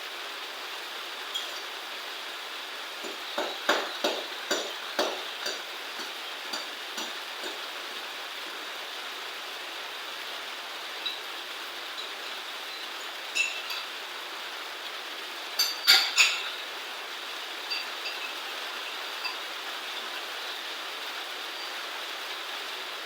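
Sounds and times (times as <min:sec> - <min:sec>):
steady hiss: 0:00.0 - 0:23.0
sharp knocks and clinks: 0:03.0 - 0:07.6, 0:13.3 - 0:13.9, 0:15.6 - 0:16.6, 0:17.7 - 0:18.4.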